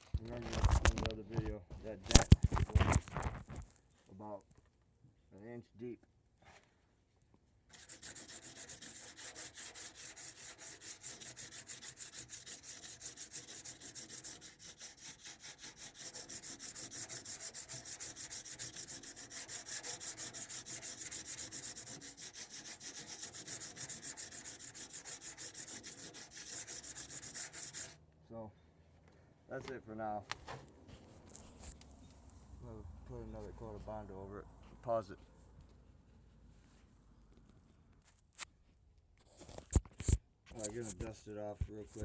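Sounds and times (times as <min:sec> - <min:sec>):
sandpaper rubbing on filler: 0:07.7 - 0:28.0.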